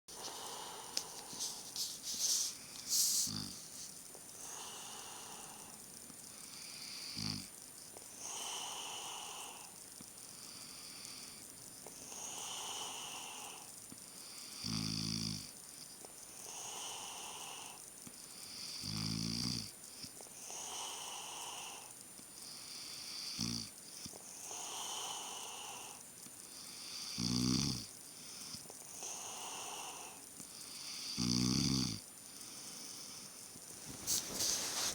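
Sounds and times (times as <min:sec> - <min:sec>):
person snoring: 0:00.1 - 0:01.8, 0:02.9 - 0:03.7, 0:04.4 - 0:05.8, 0:06.4 - 0:07.5, 0:14.5 - 0:15.5, 0:24.4 - 0:26.0, 0:26.8 - 0:32.0.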